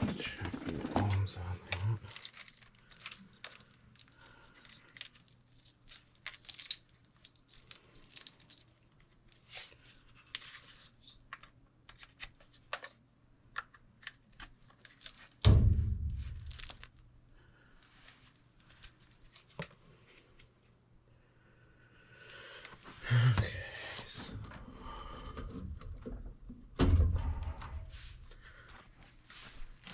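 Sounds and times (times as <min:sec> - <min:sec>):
hands clicking and rustling parts: 0:00.0 - 0:15.5
faint steady hum: 0:00.0 - 0:29.9
loud low thump: 0:15.5 - 0:16.5.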